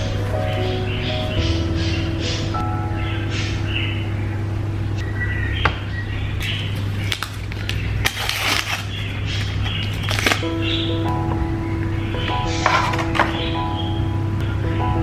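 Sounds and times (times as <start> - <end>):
low background hum: 0.0 - 15.0
packaging crinkling and rustling: 6.4 - 10.5.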